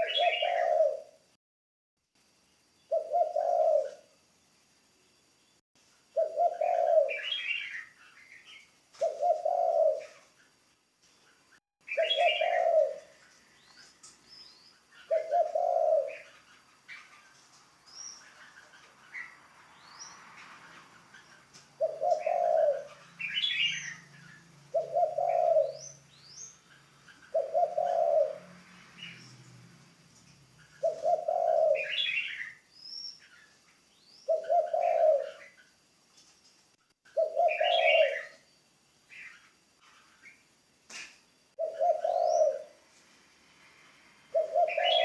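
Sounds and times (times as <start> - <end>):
dove cooing: 0.0 - 1.2, 2.9 - 4.1, 6.2 - 10.4, 11.9 - 14.0, 14.9 - 17.5, 18.1 - 29.8, 30.4 - 32.7, 34.2 - 35.6, 37.1 - 38.4, 41.6 - 42.9, 44.3 - 45.0
small birds chirping: 0.0 - 1.2, 2.6 - 45.0
small birds whistling: 0.0 - 1.2, 2.9 - 4.0, 6.2 - 10.3, 11.8 - 35.8, 37.1 - 42.9, 44.3 - 45.0.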